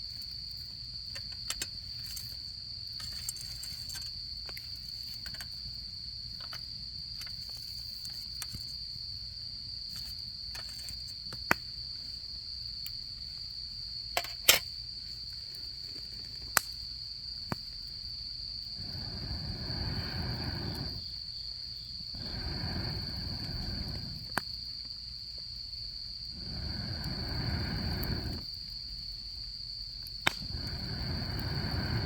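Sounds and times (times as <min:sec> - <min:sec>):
crickets trilling: 0:00.0 - 0:32.0
campfire crackling and popping: 0:16.0 - 0:17.8, 0:18.6 - 0:21.2, 0:22.2 - 0:24.7, 0:26.3 - 0:28.7, 0:30.0 - 0:32.0.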